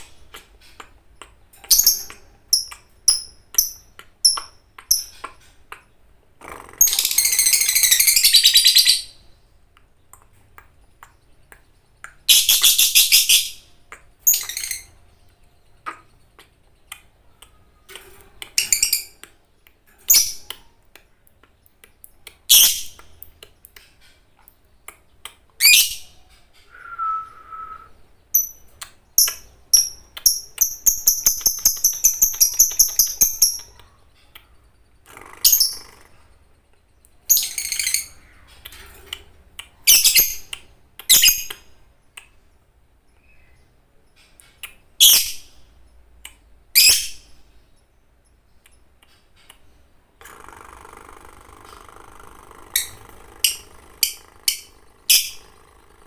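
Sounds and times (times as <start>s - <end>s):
lovebird chirping: 0.0s - 49.9s, 51.0s - 56.0s
lovebird chattering trill: 28.3s - 36.6s, 50.8s - 56.0s.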